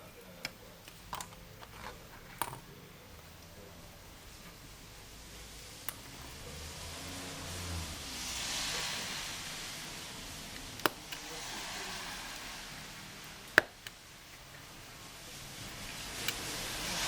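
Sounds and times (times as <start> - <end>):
cars passing on wet road: 6.4 - 10.5.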